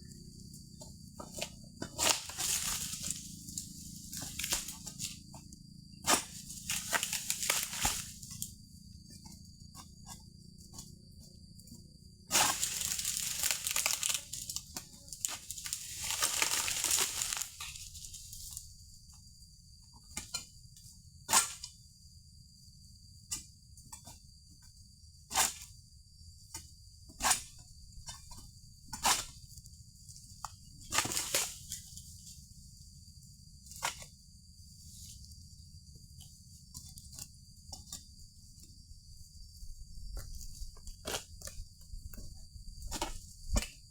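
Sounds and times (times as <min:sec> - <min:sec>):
palm fronds rustling and tearing: 0:02.0 - 0:03.3, 0:06.3 - 0:08.2, 0:12.4 - 0:14.6, 0:15.2 - 0:18.1, 0:31.0 - 0:31.8.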